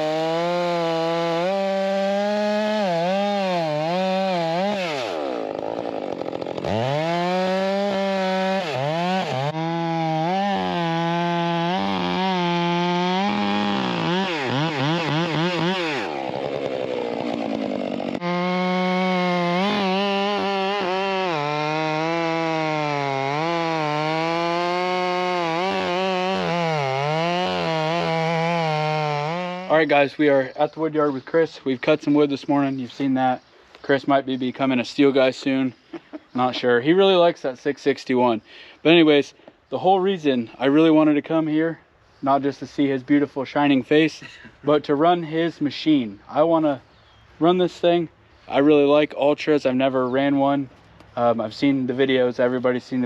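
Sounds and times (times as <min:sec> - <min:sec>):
chainsaw cutting firewood: 0:00.0 - 0:30.0.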